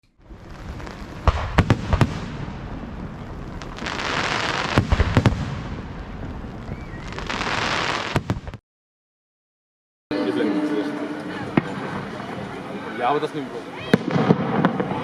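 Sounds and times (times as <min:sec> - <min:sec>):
fireworks bangs: 0:00.2 - 0:08.6, 0:13.8 - 0:15.0
fireworks hiss: 0:00.2 - 0:08.6.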